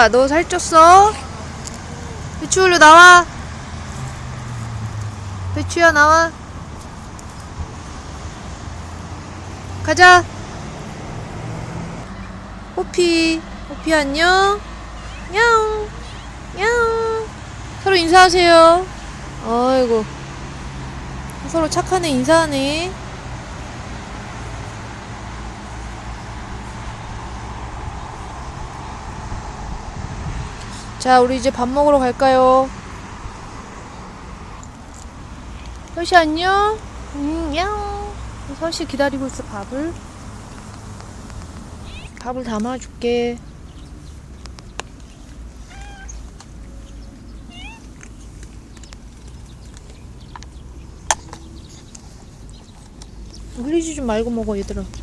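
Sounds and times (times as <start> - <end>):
cats meowing: 14.9 - 16.5, 41.8 - 42.2, 45.6 - 46.3, 47.4 - 48.2.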